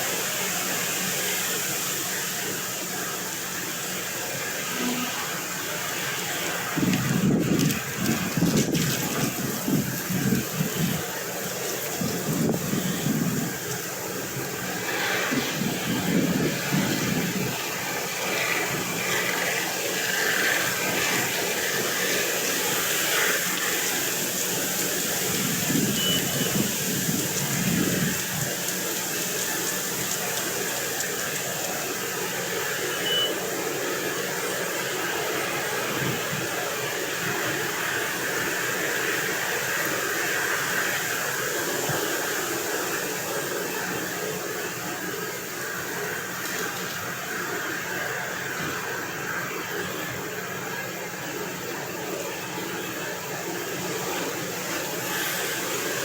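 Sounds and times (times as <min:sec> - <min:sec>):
distant machinery drone: 0:00.3 - 0:56.0
wind on microphone: 0:06.6 - 0:32.0.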